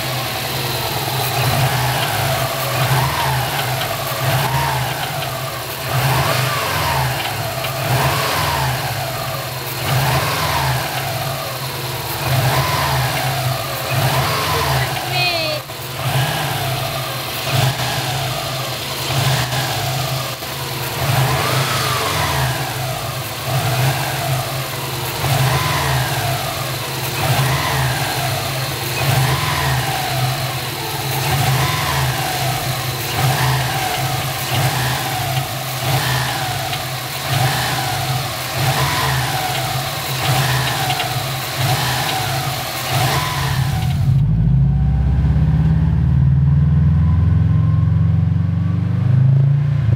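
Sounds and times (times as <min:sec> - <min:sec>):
car engine revving: 0:00.0 - 0:49.9.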